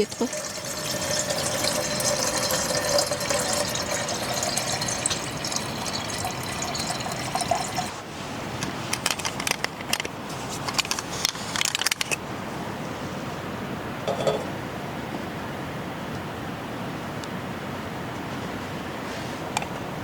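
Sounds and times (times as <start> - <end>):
liquid pouring into container: 0.0 - 8.1.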